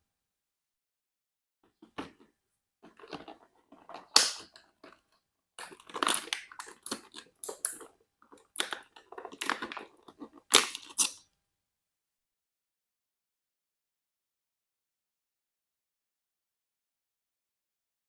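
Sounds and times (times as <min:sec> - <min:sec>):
toy packaging crinkling and tearing: 0:05.6 - 0:11.2
packaging ripping sharply: 0:10.5 - 0:11.2.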